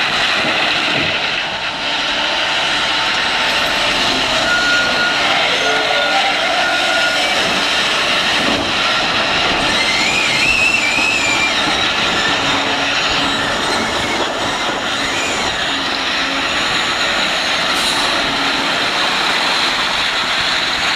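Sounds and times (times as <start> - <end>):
heavy vehicle running: 0.0 - 20.9
high metallic squeal: 1.8 - 9.0, 9.6 - 18.5.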